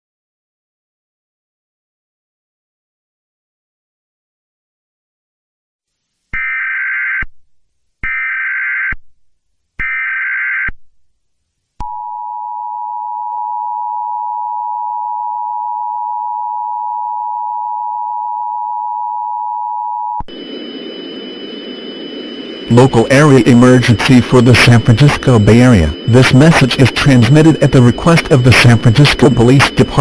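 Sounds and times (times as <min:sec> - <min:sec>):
two-tone attention signal: 0:11.9 - 0:30.0
warbling data header bursts: 0:20.3 - 0:30.0.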